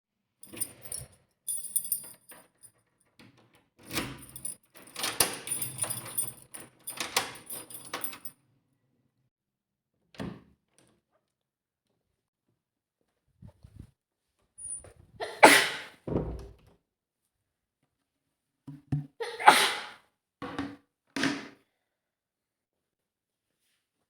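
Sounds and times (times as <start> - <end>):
keys jangling at a door: 0.4 - 2.7, 3.8 - 8.3, 14.6 - 14.9.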